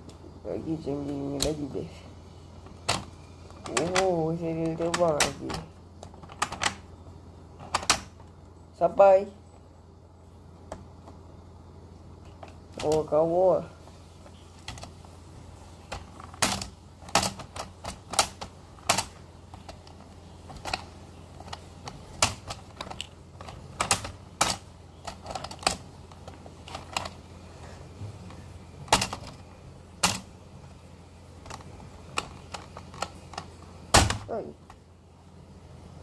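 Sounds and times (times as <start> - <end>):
faint low hum: 0.0 - 36.0
plastic toys clicking and tapping: 2.6 - 6.9, 7.6 - 8.3, 15.9 - 27.3, 28.2 - 30.3, 31.4 - 34.8.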